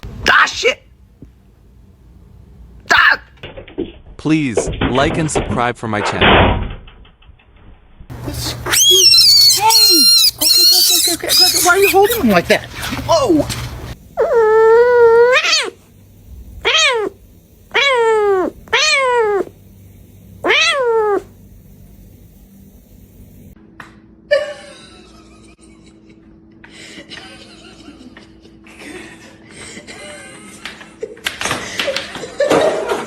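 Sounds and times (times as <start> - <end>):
faint steady hum: 8.1 - 31.3
cat meowing: 14.2 - 15.8, 16.6 - 19.5, 20.4 - 21.3.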